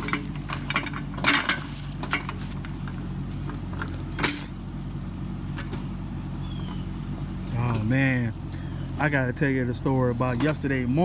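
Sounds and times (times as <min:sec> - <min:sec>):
knocks and clanks: 0:00.0 - 0:04.5
excavator diesel engine running: 0:00.0 - 0:11.0.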